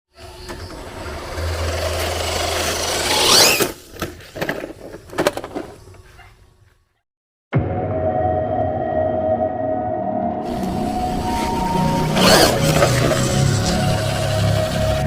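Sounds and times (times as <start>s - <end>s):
rc car motor whine: 0.2s - 3.8s, 10.5s - 15.0s.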